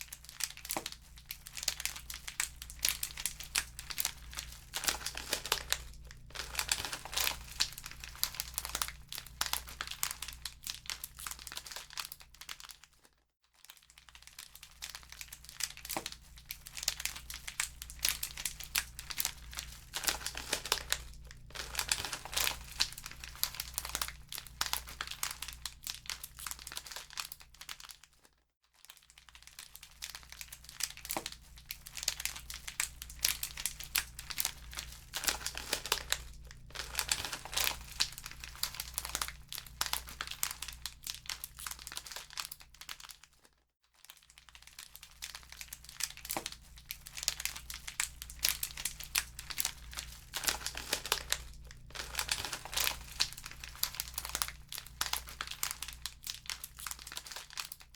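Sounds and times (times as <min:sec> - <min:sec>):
wood fire crackling: 0:00.3 - 0:10.0, 0:17.6 - 0:25.2, 0:31.2 - 0:41.0, 0:45.6 - 0:57.2.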